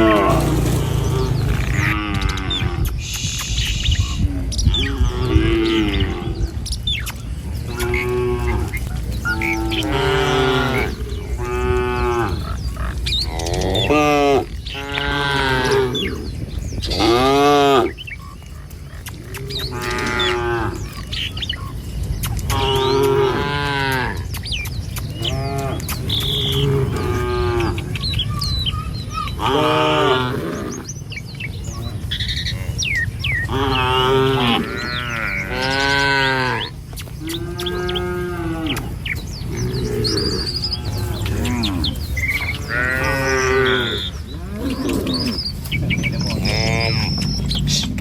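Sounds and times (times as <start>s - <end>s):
cattle mooing: 0.0s - 2.9s, 4.8s - 6.6s, 7.6s - 18.0s, 19.1s - 21.1s, 22.5s - 24.3s, 25.2s - 28.0s, 29.4s - 30.9s, 32.0s - 48.0s.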